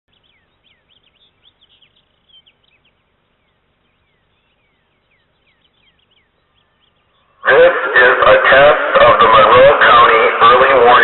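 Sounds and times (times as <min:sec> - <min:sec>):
small birds chirping: 0:00.1 - 0:08.3.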